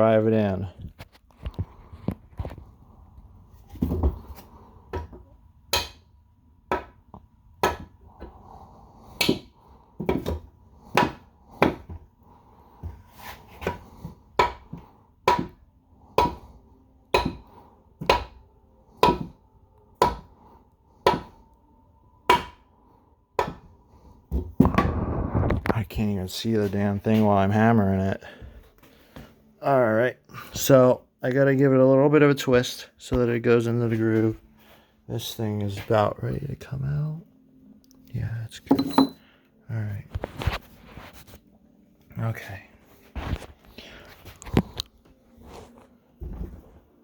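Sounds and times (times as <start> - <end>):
wooden mallet striking metal shaft: 15.3 - 15.6, 22.3 - 22.6.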